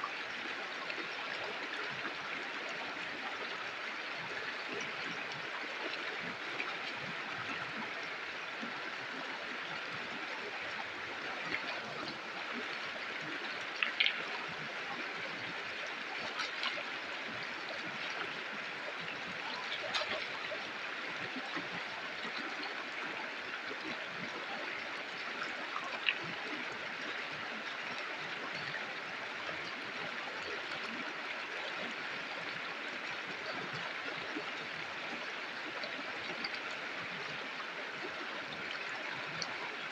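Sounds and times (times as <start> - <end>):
river water flowing: 0.0 - 39.9
water splashes: 9.8 - 27.7.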